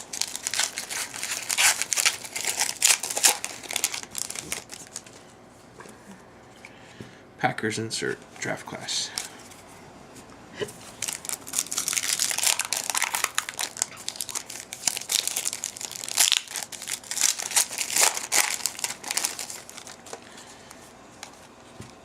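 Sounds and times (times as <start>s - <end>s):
wrapper and cards crinkling: 0.0s - 5.2s, 10.8s - 21.4s.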